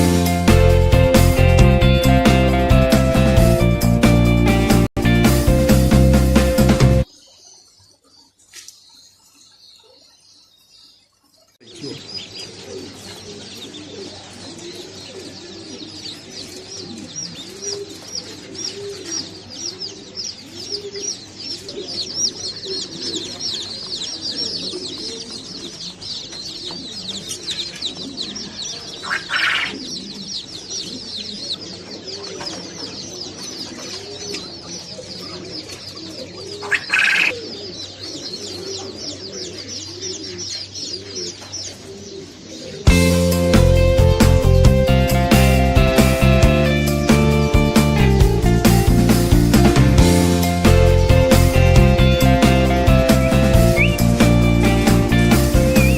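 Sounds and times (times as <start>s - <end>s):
small birds chirping: 7.0s - 55.9s
pigeons cooing: 11.6s - 43.1s
loud harsh bird calls: 11.6s - 48.0s, 49.9s - 55.9s.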